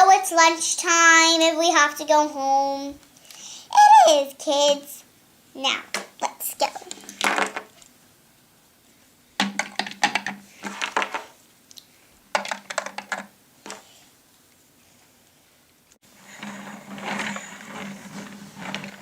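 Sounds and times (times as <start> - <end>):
plastic toys clicking and clattering: 6.8 - 7.9, 9.4 - 11.3, 12.3 - 13.8.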